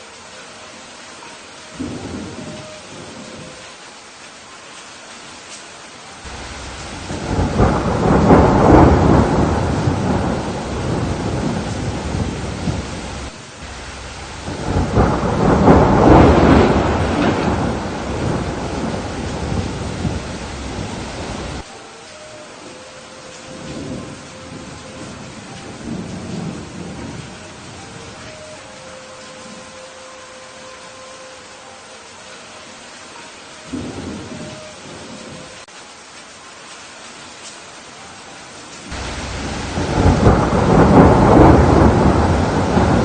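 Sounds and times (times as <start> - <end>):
steady rain: 0.0 - 43.0
thunder rolling: 6.3 - 21.6, 38.9 - 43.0.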